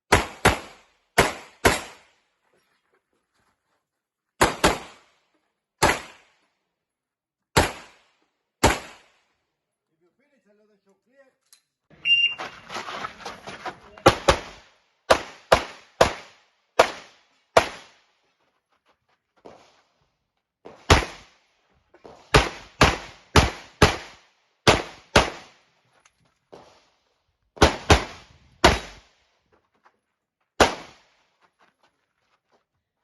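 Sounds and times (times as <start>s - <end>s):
pistol shots: 0.1s - 2.1s, 4.4s - 5.1s, 5.8s - 6.3s, 7.5s - 9.2s, 14.0s - 18.0s, 20.7s - 21.4s, 22.3s - 25.6s, 27.6s - 29.1s, 30.6s - 31.1s.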